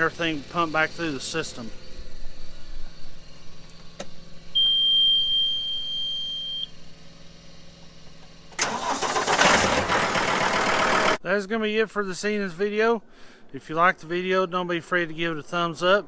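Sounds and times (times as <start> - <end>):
diesel engine cranking and starting: 0.0 - 4.5, 6.7 - 11.2
high steady beep: 4.6 - 6.7.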